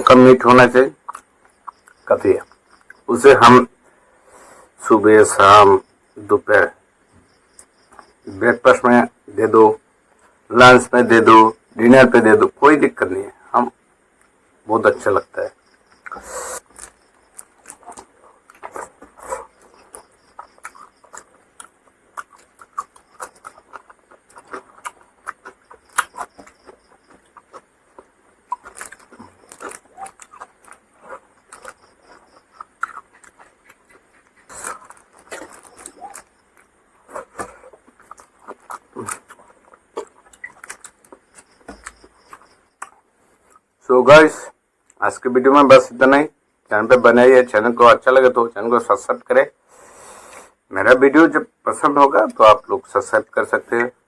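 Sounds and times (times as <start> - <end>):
person chewing and lip smacking: 1.0 - 3.1, 15.6 - 43.8.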